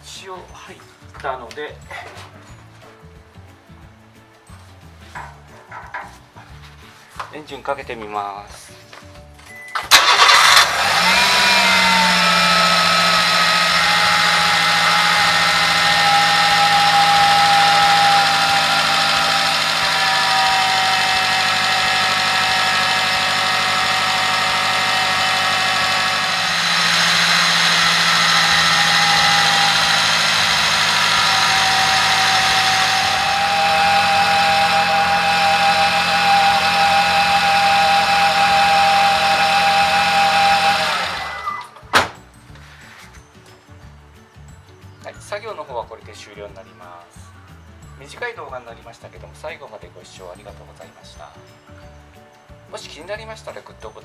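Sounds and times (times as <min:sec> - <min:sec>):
car engine starting and idling: 0:09.8 - 0:41.9.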